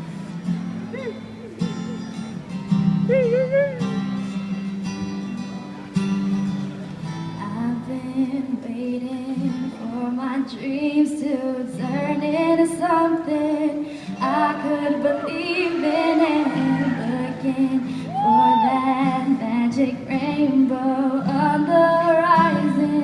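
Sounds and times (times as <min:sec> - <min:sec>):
strummed acoustic guitar: 0:00.0 - 0:23.0
woman singing: 0:07.4 - 0:23.0.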